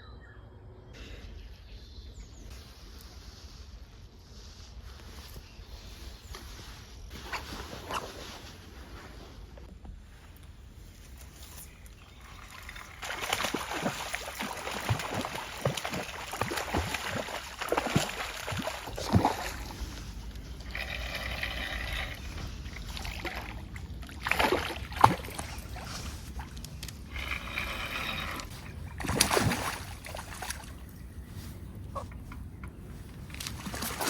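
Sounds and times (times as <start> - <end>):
water splashing and sloshing: 11.0 - 34.0
water plops and drips: 12.3 - 19.8.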